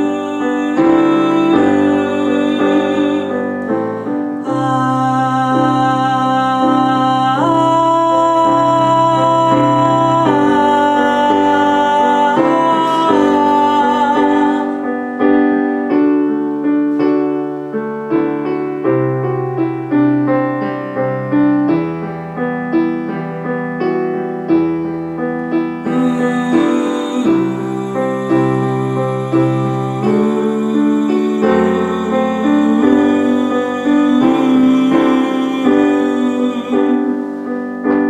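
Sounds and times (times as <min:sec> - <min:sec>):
held sung note with vibrato: 0:00.0 - 0:15.5, 0:25.8 - 0:37.7
slow piano accompaniment: 0:00.0 - 0:38.0.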